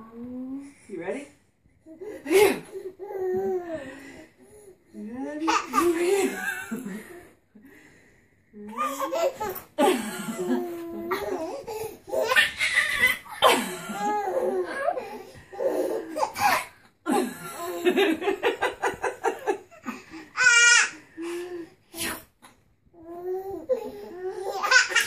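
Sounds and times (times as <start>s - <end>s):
baby laughing: 8.8s - 16.7s, 20.4s - 21.0s, 23.4s - 25.0s.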